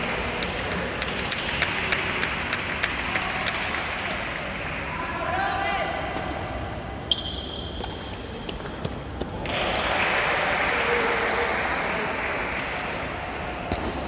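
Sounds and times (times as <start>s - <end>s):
spectators applauding: 0.0s - 4.9s, 9.4s - 13.5s.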